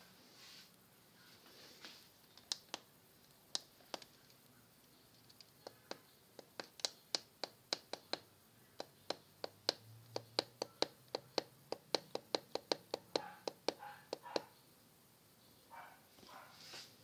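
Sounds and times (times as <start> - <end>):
sharp hard clicks: 5.2 - 14.5.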